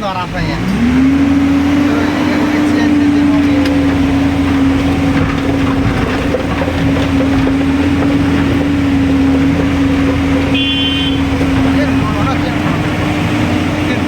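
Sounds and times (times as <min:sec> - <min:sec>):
diesel engine humming: 0:00.0 - 0:14.0.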